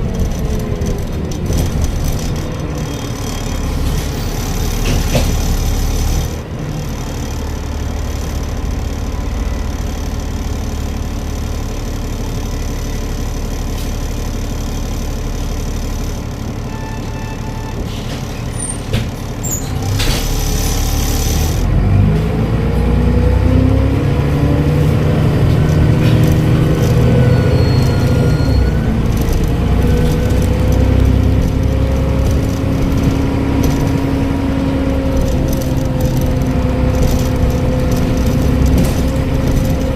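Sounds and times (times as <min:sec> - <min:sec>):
bus diesel engine: 0:00.0 - 0:39.9
high turbo whistle: 0:16.7 - 0:17.9, 0:27.0 - 0:29.1.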